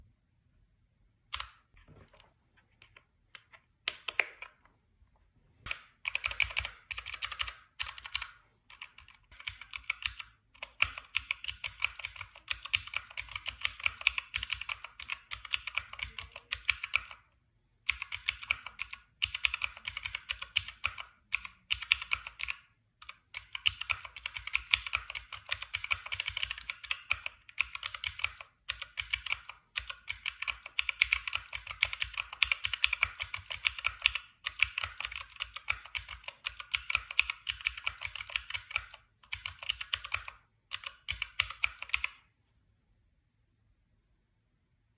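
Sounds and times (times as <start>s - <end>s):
clicky mechanical keys typing: 1.3s - 1.7s, 2.8s - 4.7s, 5.7s - 17.3s, 17.9s - 42.2s.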